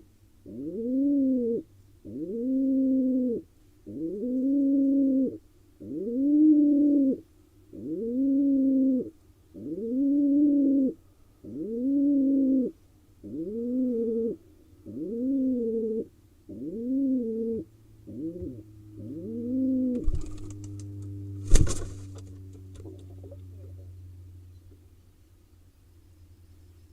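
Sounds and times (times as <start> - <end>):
pigeon cooing: 0.4 - 20.8.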